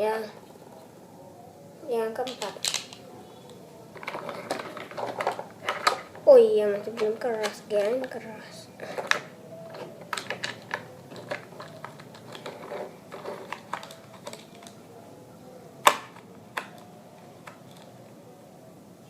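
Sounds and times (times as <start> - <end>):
plastic toy parts clicking: 2.2 - 3.0, 4.0 - 6.2, 8.8 - 14.8, 15.8 - 18.0.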